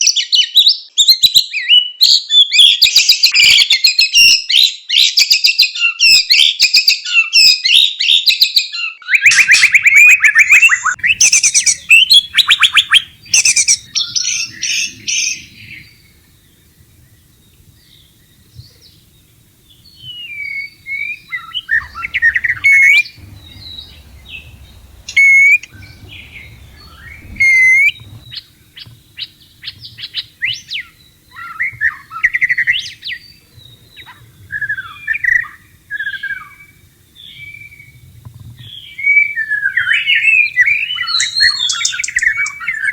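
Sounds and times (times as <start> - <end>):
bird whistled notes: 9.2 - 38.0, 38.7 - 42.9
birds chattering and rattling: 9.3 - 42.9.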